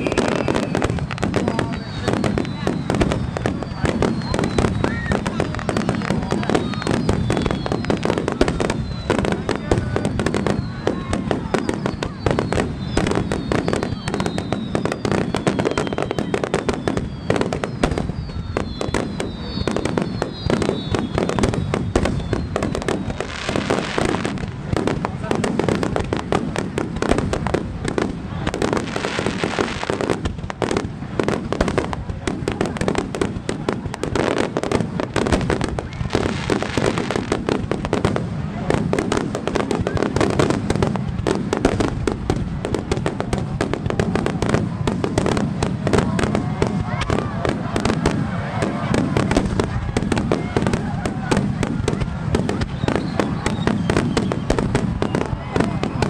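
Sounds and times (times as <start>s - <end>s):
fireworks bangs and crackles: 0.0s - 56.0s
thin high whistle: 11.6s - 23.2s.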